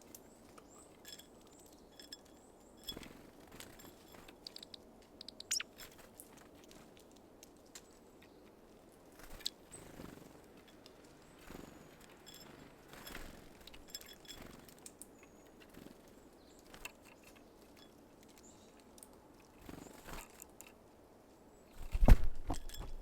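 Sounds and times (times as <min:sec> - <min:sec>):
high bird chirps: 0:04.6 - 0:05.8.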